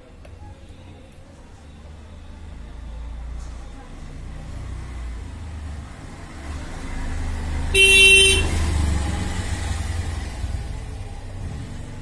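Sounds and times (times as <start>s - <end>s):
road traffic rumble: 0.0s - 12.0s
vehicle horn toot: 7.7s - 8.7s.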